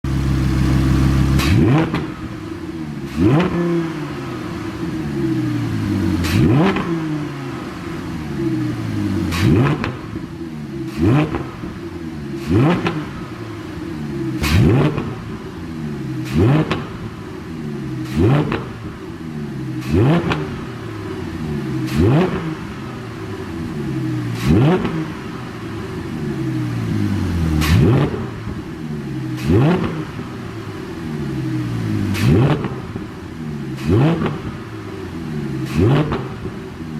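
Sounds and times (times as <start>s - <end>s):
car engine revving: 0.0s - 36.9s
exhaust pops: 0.8s - 4.2s, 6.1s - 7.2s, 9.2s - 10.3s, 10.9s - 11.8s, 12.4s - 13.3s, 14.4s - 15.6s, 16.2s - 17.2s, 18.0s - 19.0s, 19.8s - 20.8s, 21.7s - 22.9s, 27.4s - 28.7s, 29.3s - 30.4s, 32.0s - 33.1s, 33.7s - 34.7s, 35.3s - 36.6s.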